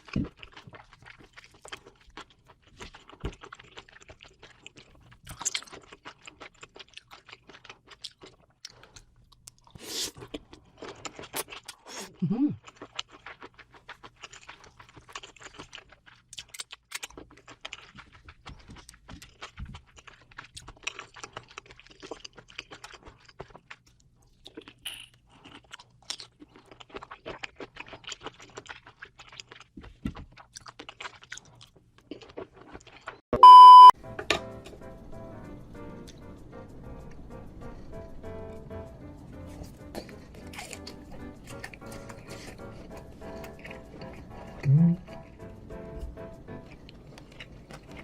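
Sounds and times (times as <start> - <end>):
chewing food: 0.0 - 33.9, 37.1 - 48.0
loud electronic beep: 33.4 - 33.9
quiet background music: 34.0 - 48.0.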